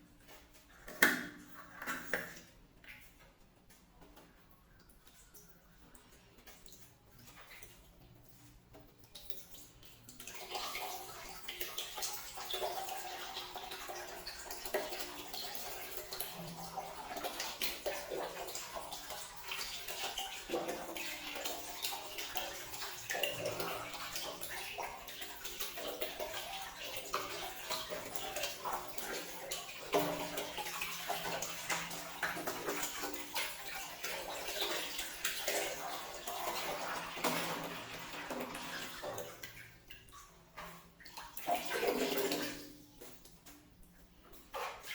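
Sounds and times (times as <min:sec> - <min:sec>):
water running and splashing: 0:09.5 - 0:43.0.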